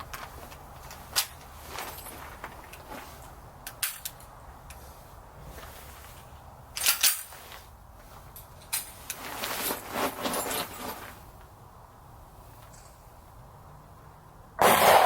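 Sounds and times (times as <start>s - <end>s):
pistol metal clacks and rattling: 0.0s - 4.8s, 6.8s - 7.4s, 8.3s - 11.0s.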